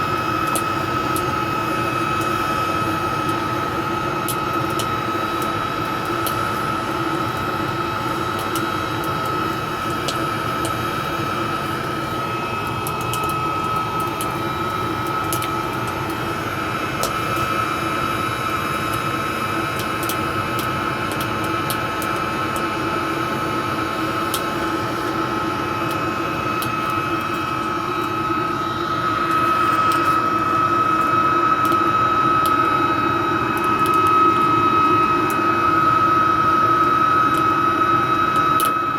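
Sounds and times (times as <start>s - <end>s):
furnace roaring: 0.0s - 38.9s
high whine: 23.2s - 38.9s.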